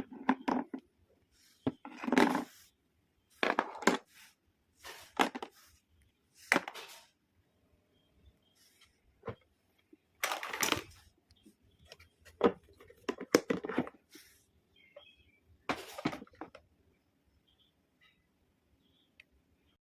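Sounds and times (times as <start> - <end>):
plastic packaging rustling: 10.2 - 11.1.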